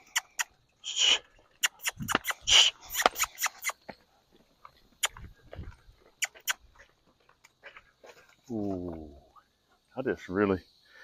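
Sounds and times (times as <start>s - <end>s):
horse breathy bursts: 0.0s - 3.8s.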